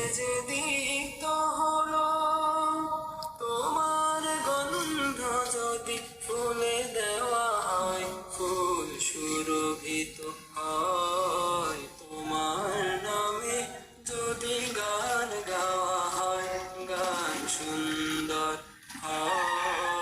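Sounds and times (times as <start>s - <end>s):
person singing long gliding notes: 7.2s - 20.0s.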